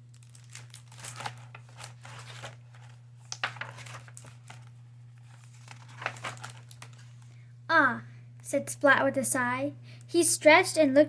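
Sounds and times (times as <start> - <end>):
steady low hum: 0.0 - 11.0
book pages rustling: 0.2 - 7.3.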